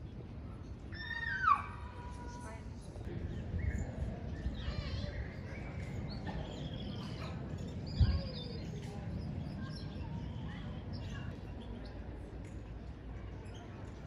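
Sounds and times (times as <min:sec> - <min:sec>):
small birds chirping: 0:03.2 - 0:14.0.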